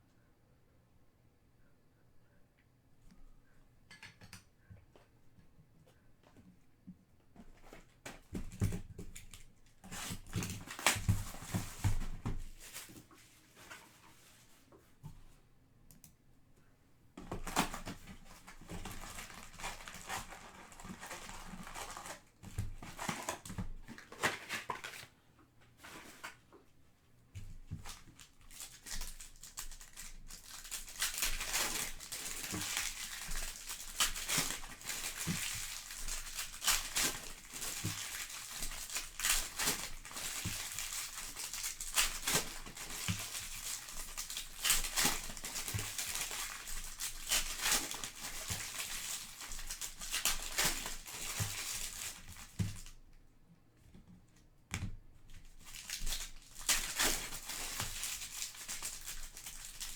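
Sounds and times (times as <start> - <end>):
foil wrappers tearing and crinkling: 9.9 - 12.9, 17.3 - 25.1, 27.7 - 52.9, 55.5 - 59.9.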